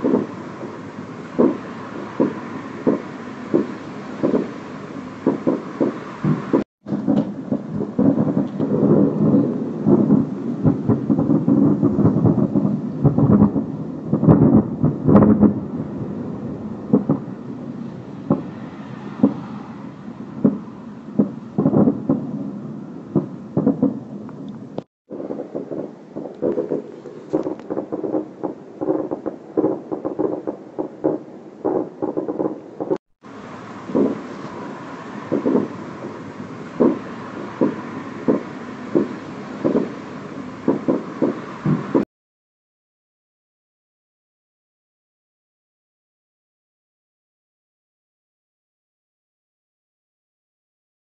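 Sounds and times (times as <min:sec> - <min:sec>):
dull booms and thuds: 0:00.0 - 0:00.4, 0:01.4 - 0:01.6, 0:02.2 - 0:04.6, 0:05.2 - 0:15.6, 0:16.9 - 0:17.3, 0:21.2 - 0:22.3, 0:23.2 - 0:24.0, 0:34.0 - 0:34.2, 0:35.3 - 0:35.8, 0:36.8 - 0:37.0, 0:37.6 - 0:40.0, 0:40.7 - 0:42.0
low rumble: 0:00.0 - 0:30.0, 0:30.8 - 0:42.0.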